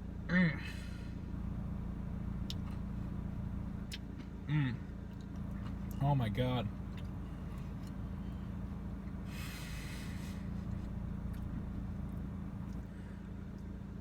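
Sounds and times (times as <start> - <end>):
low hum: 4.8 - 14.0
man exhaling through nose: 9.3 - 10.5.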